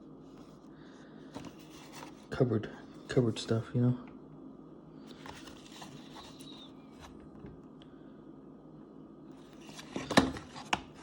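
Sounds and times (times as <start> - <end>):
soft rustles of handling: 0.2 - 3.2, 5.0 - 7.6.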